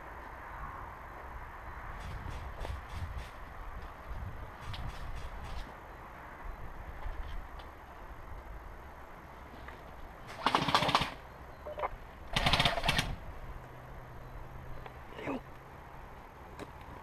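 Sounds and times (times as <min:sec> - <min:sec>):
airsoft gun full-auto bursts: 0:10.3 - 0:11.2, 0:12.3 - 0:13.2.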